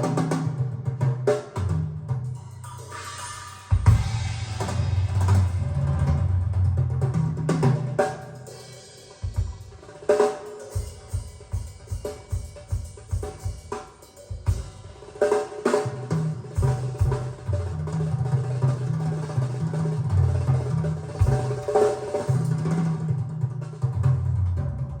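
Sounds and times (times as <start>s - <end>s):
kick drum beats: 3.7s - 5.6s, 9.2s - 9.8s, 10.8s - 15.0s, 21.2s - 21.8s.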